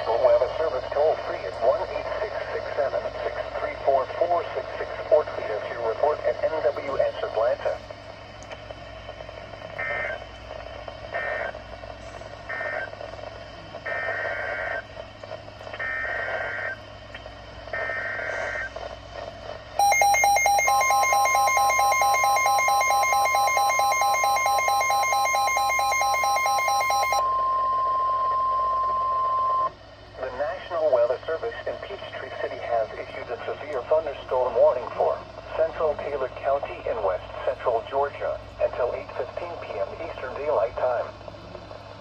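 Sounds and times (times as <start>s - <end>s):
screeching data bursts: 19.8s - 27.2s
loud buzzing alarm: 19.8s - 29.7s
steady warning tone: 19.8s - 31.8s.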